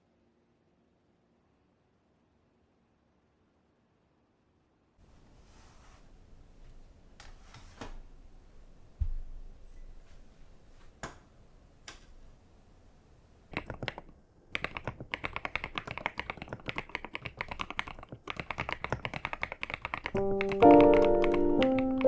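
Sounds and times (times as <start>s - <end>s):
typing on mechanical keyboard: 13.5s - 22.0s
background music: 20.2s - 22.0s.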